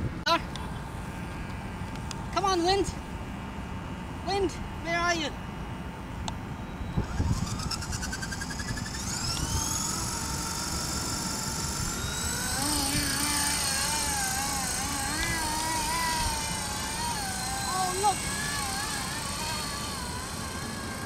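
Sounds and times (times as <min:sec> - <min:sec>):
electric rc helicopter whine: 0:00.5 - 0:03.0, 0:06.3 - 0:21.0
wind rumble on microphone: 0:06.9 - 0:07.9.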